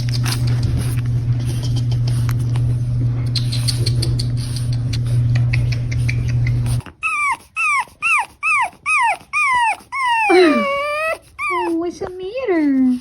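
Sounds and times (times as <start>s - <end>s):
steady low hum: 0.0s - 6.9s
puppy whining and crying: 6.8s - 11.8s.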